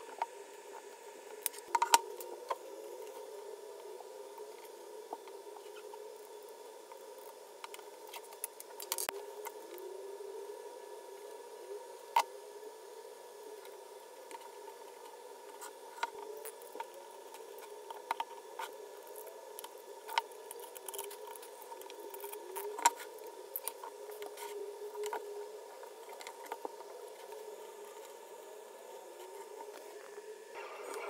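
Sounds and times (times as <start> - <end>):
faint steady hum: 0.0 - 31.0
small parts and tools clicking: 4.4 - 9.6, 13.6 - 28.2.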